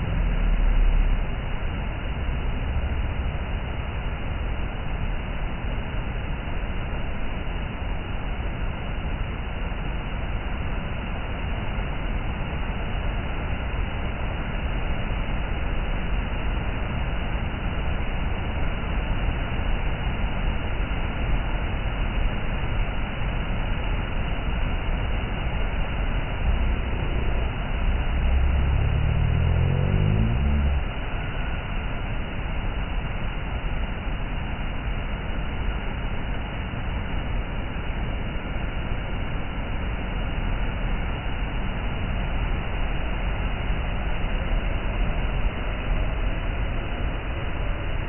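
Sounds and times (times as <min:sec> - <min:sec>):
low rising tone: 0:26.1 - 0:31.5.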